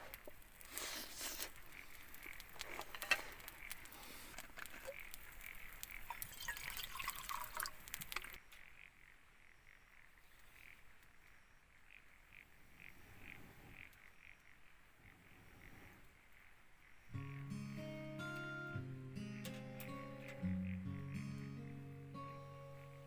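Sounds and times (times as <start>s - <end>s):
scattered clicks and crackles: 0.0s - 8.6s
frogs croaking: 0.0s - 23.0s.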